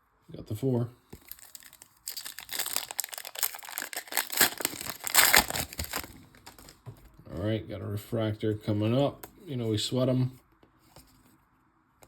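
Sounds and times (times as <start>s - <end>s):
foil wrapper tearing and crinkling: 1.2s - 6.8s.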